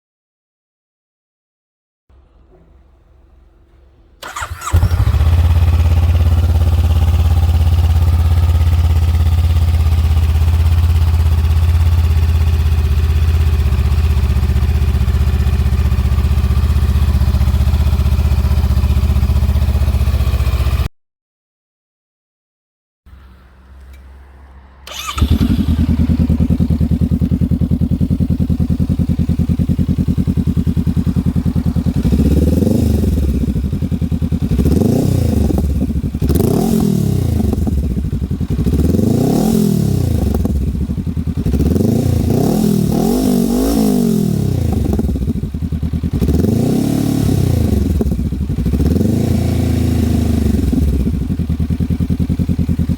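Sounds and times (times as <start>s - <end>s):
motorcycle engine starting: 2.2s - 20.9s, 23.1s - 52.9s
motorcycle engine idling: 4.2s - 20.9s, 24.9s - 36.8s, 37.4s - 39.1s, 40.1s - 43.0s, 44.2s - 52.9s
motorcycle engine revving: 4.2s - 20.9s, 23.1s - 52.9s.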